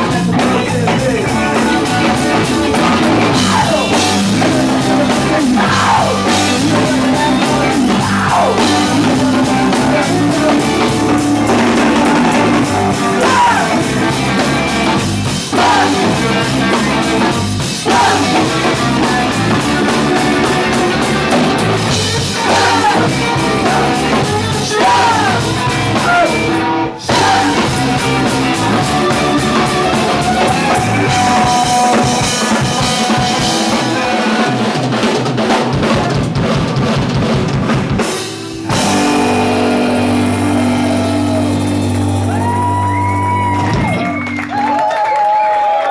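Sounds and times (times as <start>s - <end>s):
live rock band playing: 0.0s - 45.3s.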